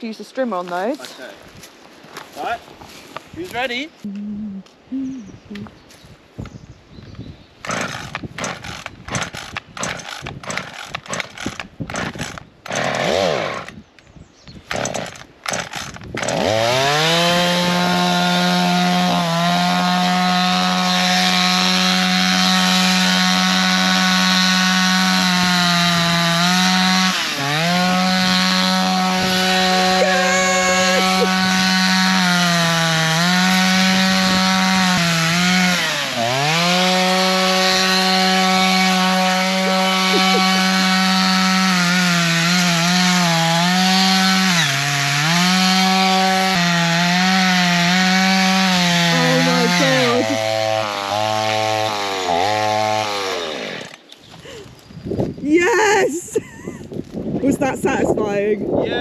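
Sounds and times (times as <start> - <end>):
chainsaw cutting stems: 7.6 - 13.8, 14.6 - 54.8
chainsaw running: 7.7 - 13.8, 14.7 - 54.6.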